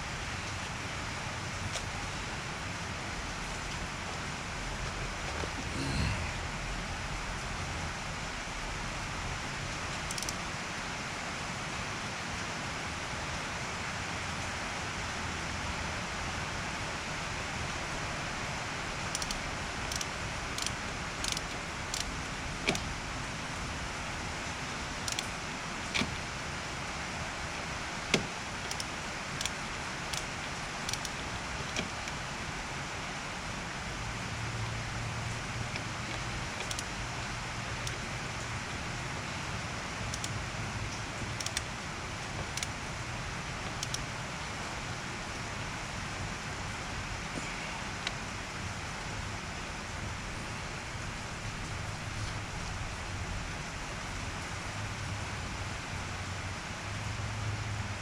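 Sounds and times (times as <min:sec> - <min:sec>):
rain hissing: 0:00.0 - 0:57.9
hand tools clicking and tapping: 0:35.7 - 0:37.0.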